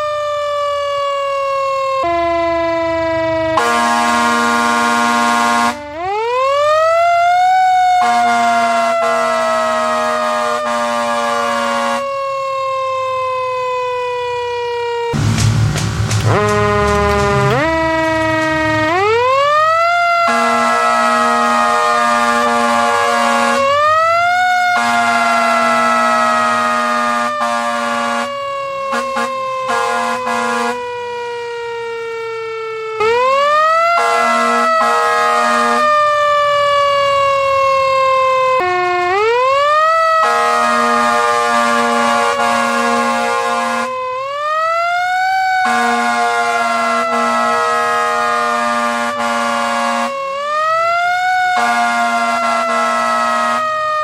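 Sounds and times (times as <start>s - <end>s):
siren winding up and falling: 0.0s - 15.4s, 16.2s - 54.0s
air horn blasts: 3.5s - 6.0s, 8.0s - 12.1s, 15.2s - 19.4s, 20.2s - 24.0s, 24.6s - 30.9s, 33.9s - 36.0s, 40.1s - 44.0s, 45.6s - 50.2s, 51.5s - 53.8s.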